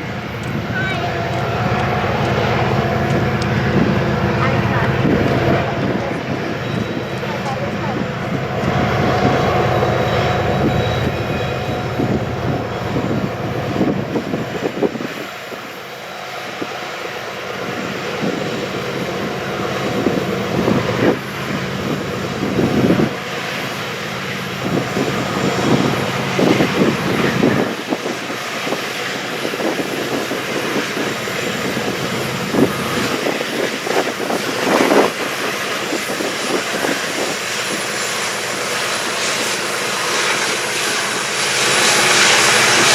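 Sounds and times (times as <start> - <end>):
train cars clanking: 0.0 - 15.0
diesel engine hum: 0.0 - 15.1, 15.8 - 28.0
freight train rumbling past: 0.0 - 42.9.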